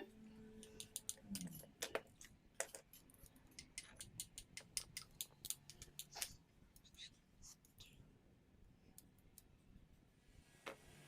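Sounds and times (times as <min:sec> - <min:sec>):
small hard parts clicking: 0:00.6 - 0:06.4.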